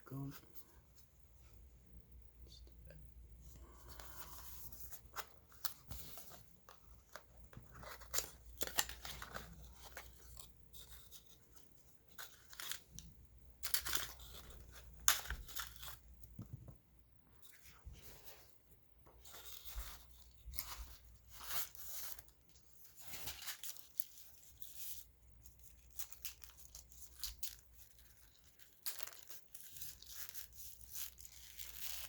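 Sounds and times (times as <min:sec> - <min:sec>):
packaging rustling and tearing: 0:03.9 - 0:11.4, 0:19.2 - 0:32.0.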